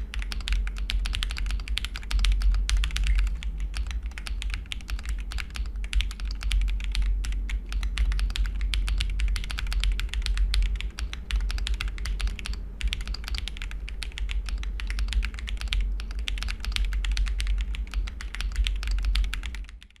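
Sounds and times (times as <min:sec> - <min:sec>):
mechanical keyboard typing: 0:00.0 - 0:20.0
steady low hum: 0:00.0 - 0:20.0.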